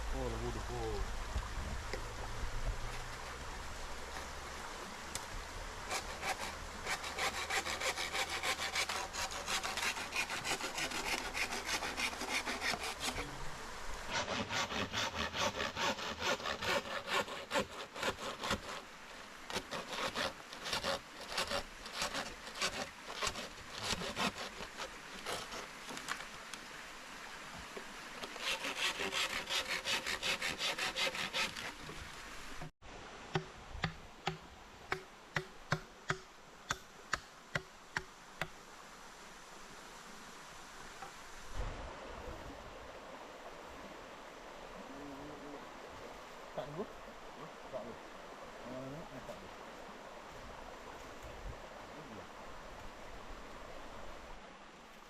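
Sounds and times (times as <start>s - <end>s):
wood being sawn: 5.9s - 13.4s, 14.1s - 18.8s, 19.5s - 26.0s, 28.2s - 32.0s.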